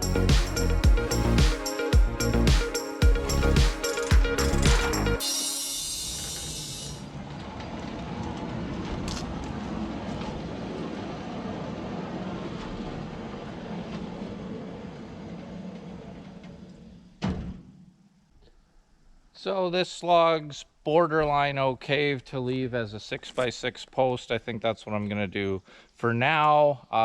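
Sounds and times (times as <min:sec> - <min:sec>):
bright hissing saw cut: 0:00.0 - 0:07.1.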